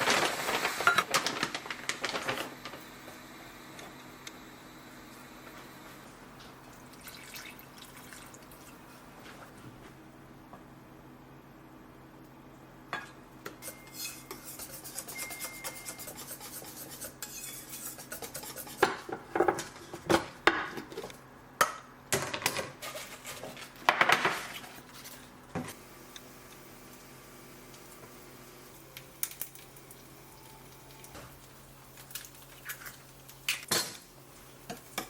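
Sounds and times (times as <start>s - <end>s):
utensils clinking against dishes: 13.0s - 18.9s.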